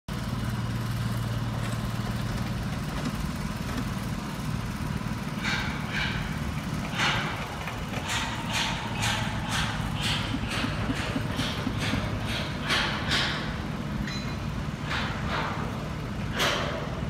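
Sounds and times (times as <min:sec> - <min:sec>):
construction machinery engine humming: 0:00.1 - 0:17.0.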